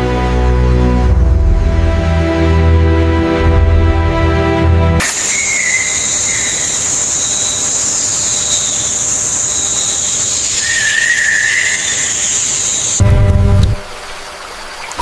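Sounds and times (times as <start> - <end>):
loud low rumble: 1.1 - 5.0, 13.0 - 13.8
whistling bird calls: 5.0 - 13.0
high insect drone: 5.0 - 13.1.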